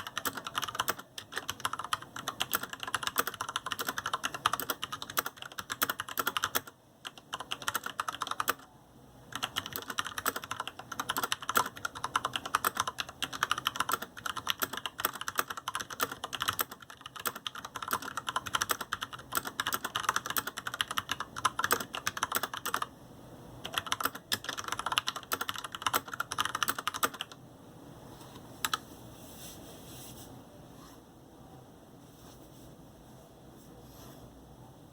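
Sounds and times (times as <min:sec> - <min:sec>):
fast typing on mechanical keyboard: 0:00.0 - 0:08.7, 0:09.3 - 0:22.9, 0:23.6 - 0:27.4.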